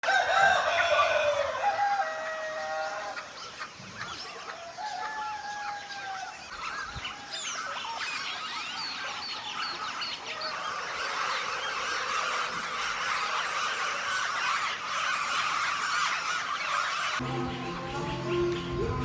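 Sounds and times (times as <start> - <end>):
rooster crowing: 0.0 - 3.3, 4.5 - 6.5
small birds chirping: 0.3 - 19.0.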